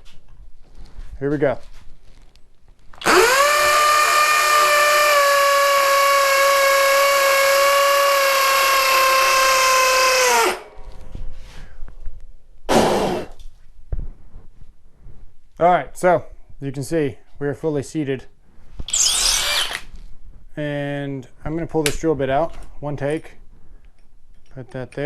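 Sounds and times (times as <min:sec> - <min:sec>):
hammer drill boring into concrete: 0:03.0 - 0:10.6, 0:18.9 - 0:19.9.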